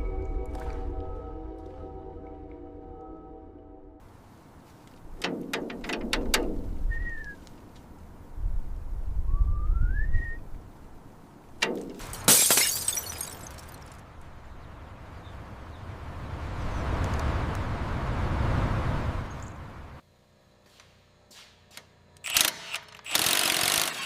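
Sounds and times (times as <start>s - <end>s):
sharp knocks: 5.1s - 7.2s, 11.6s - 12.2s.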